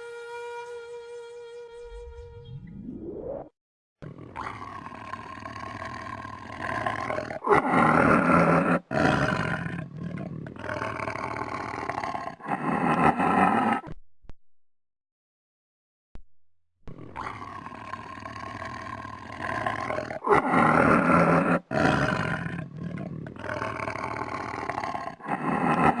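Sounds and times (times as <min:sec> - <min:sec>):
tiger growling: 0:04.0 - 0:14.0, 0:16.9 - 0:26.0.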